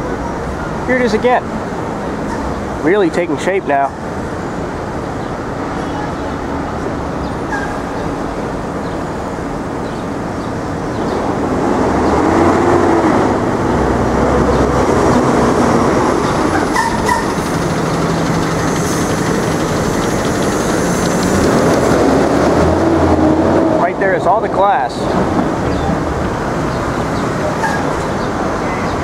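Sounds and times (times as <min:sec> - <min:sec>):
passing cars and vehicles: 0:00.0 - 0:29.0
brief high squeal: 0:07.5 - 0:07.9
large vehicle passing: 0:10.8 - 0:29.0.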